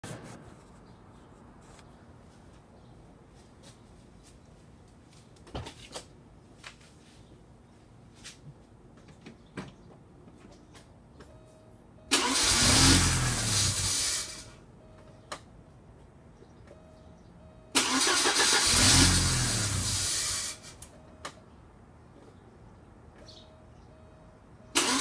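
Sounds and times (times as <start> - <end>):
car engine cranking on starter: 12.1 - 14.5, 17.8 - 20.8, 24.8 - 25.0.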